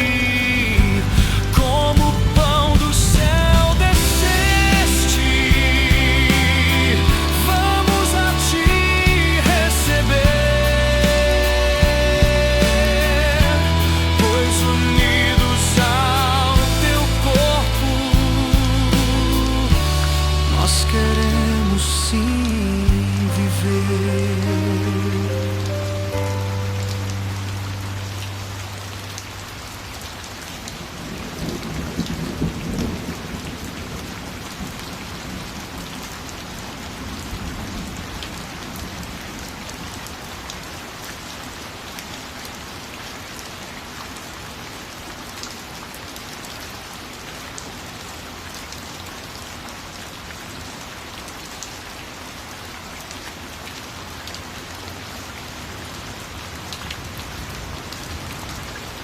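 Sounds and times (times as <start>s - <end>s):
steady rain: 0.0s - 59.0s
thunder rumbling: 0.7s - 21.6s, 31.0s - 34.8s.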